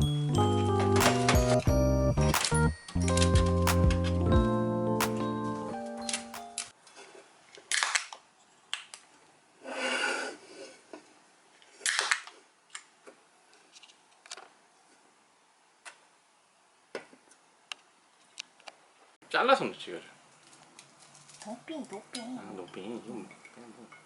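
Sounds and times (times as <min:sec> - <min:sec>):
rustling: 0:20.3 - 0:22.0.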